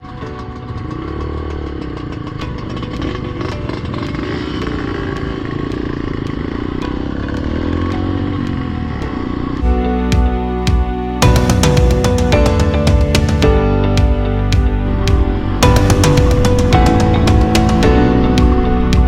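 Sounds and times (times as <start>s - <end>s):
dirt bike engine revving: 0.0s - 9.9s, 14.8s - 18.9s.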